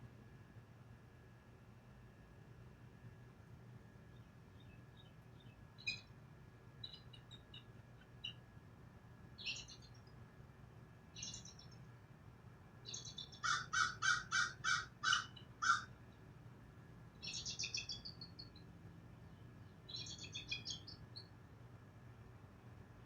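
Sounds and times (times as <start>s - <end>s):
bird chirps: 4.1s - 6.2s, 6.8s - 8.5s, 9.4s - 10.2s, 11.2s - 11.9s, 12.8s - 15.8s, 17.2s - 21.4s
bird trill: 4.6s - 6.1s, 6.8s - 8.4s, 9.4s - 10.1s, 11.2s - 11.8s, 12.8s - 15.9s, 17.2s - 18.7s, 19.9s - 21.3s.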